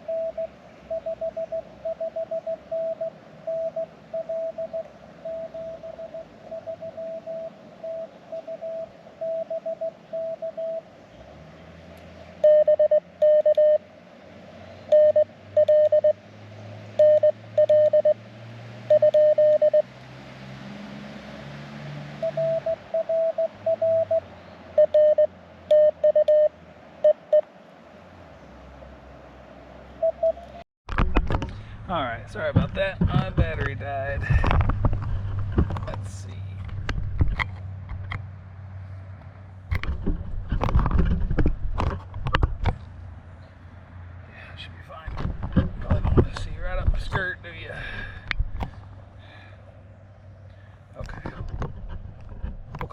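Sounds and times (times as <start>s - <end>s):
morse code beeping tone: 0.0s - 10.8s, 12.4s - 13.8s, 14.9s - 16.2s, 17.0s - 18.2s, 18.9s - 19.9s, 22.2s - 24.2s, 24.8s - 27.4s, 30.0s - 30.6s.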